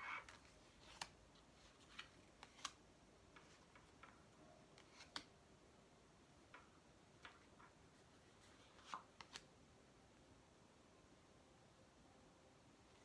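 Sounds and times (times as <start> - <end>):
cards being shuffled: 0.0 - 4.2, 4.8 - 5.3, 8.4 - 9.5.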